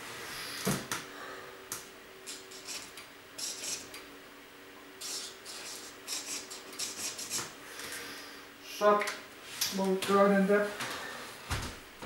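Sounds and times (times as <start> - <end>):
faint steady hum: 0.0 - 12.0
pen scratching on cardboard: 5.0 - 7.5.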